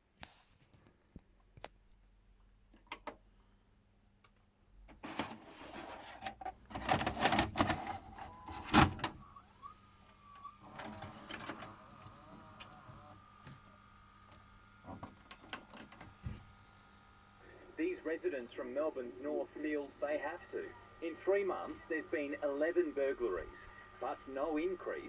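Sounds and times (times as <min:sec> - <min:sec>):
motor whirring: 0:07.8 - 0:16.8.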